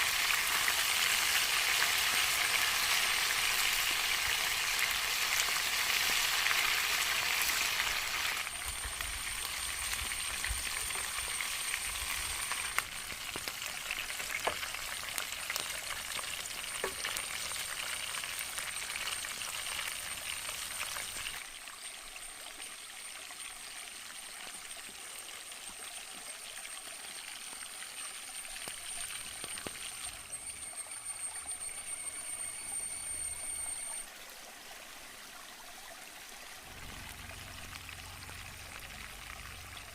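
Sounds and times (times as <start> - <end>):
thin high-pitched whine: 0.0 - 23.7, 26.2 - 34.3
chicken sizzling in hot oil: 0.0 - 34.1, 36.6 - 39.9.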